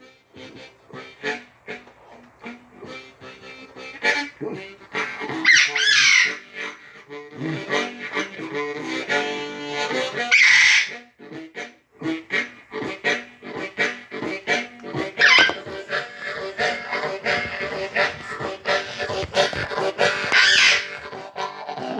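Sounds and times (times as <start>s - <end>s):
bass harmonica playing blues: 0.0s - 21.9s
parrot squawking: 5.2s - 6.6s, 10.3s - 11.0s, 15.2s - 21.0s.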